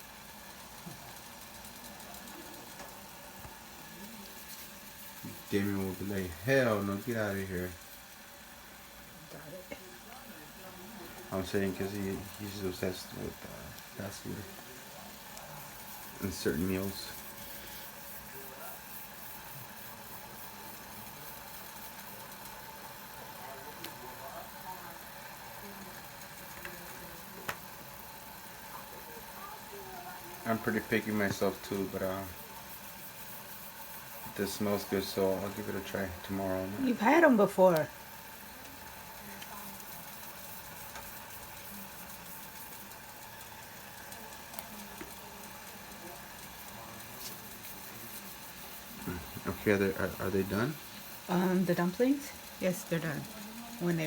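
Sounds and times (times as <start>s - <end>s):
pot of broth boiling: 0.0s - 54.0s.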